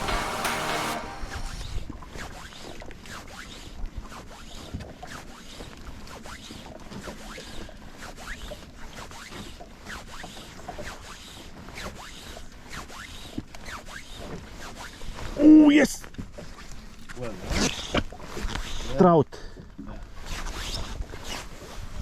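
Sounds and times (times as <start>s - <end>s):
fly line rasping through rod guides: 8.0s - 15.3s.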